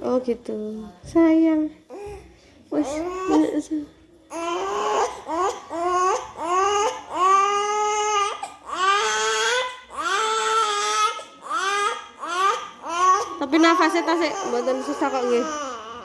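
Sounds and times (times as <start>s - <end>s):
baby crying: 2.8s - 3.6s, 4.3s - 16.0s.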